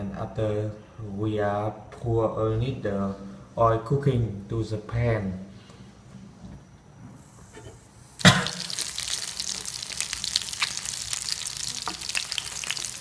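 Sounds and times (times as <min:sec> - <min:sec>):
food sizzling in hot oil: 0:08.0 - 0:13.0.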